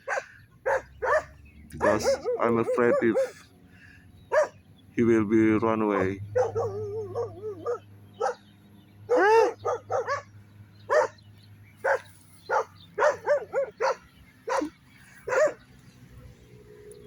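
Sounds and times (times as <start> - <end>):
dog barking: 0.0 - 3.4, 4.3 - 4.6, 5.9 - 8.4, 9.1 - 11.2, 11.8 - 15.6.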